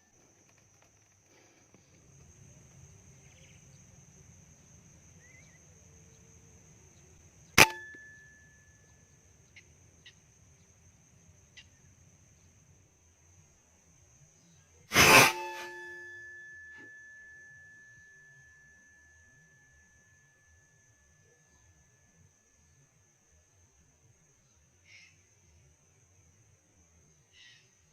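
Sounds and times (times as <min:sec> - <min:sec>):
air rifle shot: 0:07.6 - 0:08.0, 0:14.9 - 0:16.1
high-pitched insect buzz: 0:14.9 - 0:16.3.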